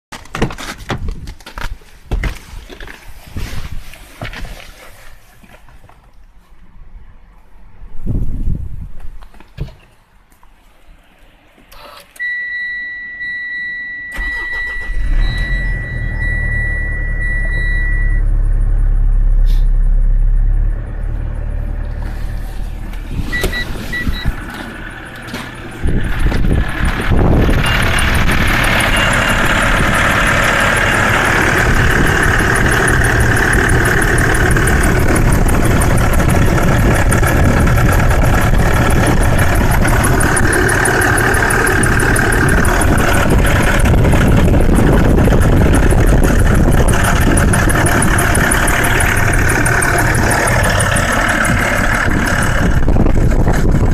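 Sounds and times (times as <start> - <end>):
car engine starting and running: 11.6 - 53.9
steady warning beep: 12.2 - 19.4, 23.3 - 24.4, 26.8 - 34.8
drive belt squeaking: 25.5 - 53.8.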